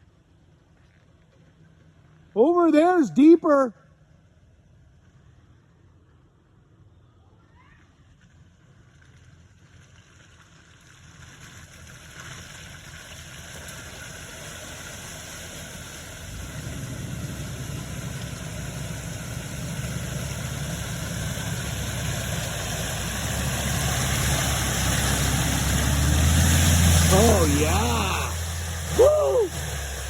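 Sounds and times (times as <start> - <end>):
car engine running: 15.6 - 30.0.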